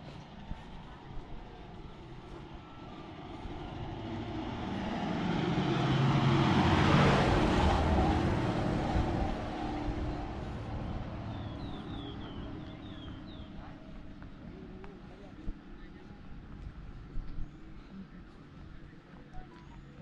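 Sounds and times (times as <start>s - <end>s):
vehicle engine and tyre noise: 0.0s - 20.0s.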